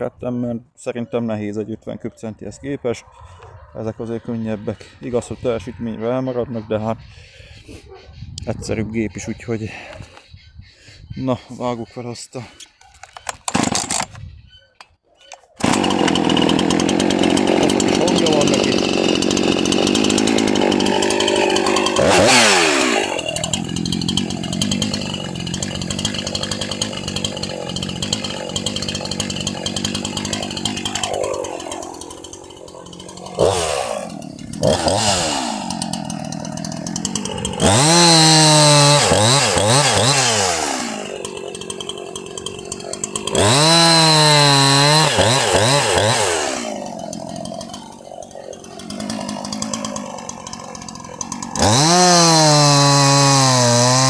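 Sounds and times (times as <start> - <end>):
chainsaw idling and revving: 2.6 - 6.0, 13.5 - 14.1, 15.6 - 54.0
chainsaw cutting wood: 13.0 - 14.2, 15.4 - 54.0.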